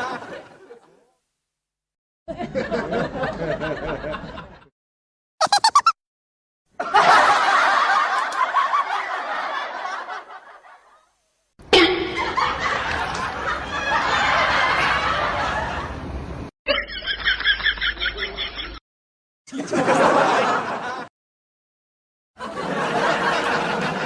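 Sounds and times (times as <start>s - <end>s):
people laughing: 0.0s - 1.0s, 2.3s - 4.7s, 6.8s - 11.0s, 11.8s - 16.0s, 16.7s - 18.8s, 19.5s - 21.1s, 22.4s - 24.0s.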